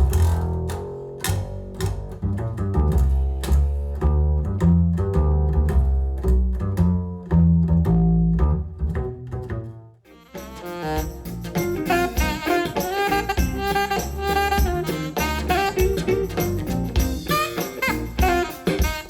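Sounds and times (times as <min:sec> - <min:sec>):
plucked double bass: 0:00.0 - 0:19.0
jingling percussion: 0:10.3 - 0:19.0.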